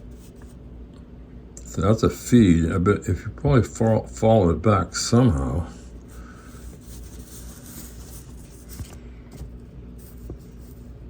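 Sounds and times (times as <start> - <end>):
low room hum: 0.0 - 11.0.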